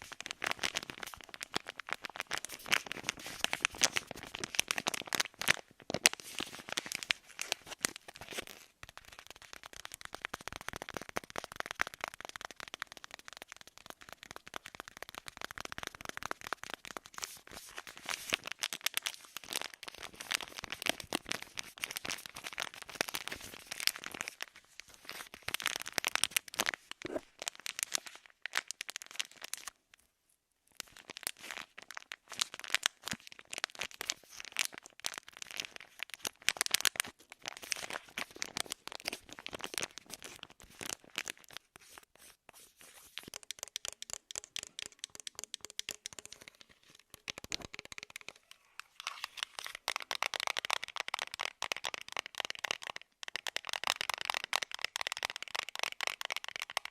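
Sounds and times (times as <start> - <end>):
small crackling clicks: 43.3 - 56.9.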